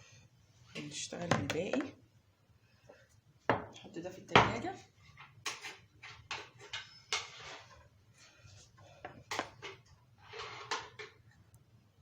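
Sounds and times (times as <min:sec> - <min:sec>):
dishes knocking and clattering: 0:03.5 - 0:07.7.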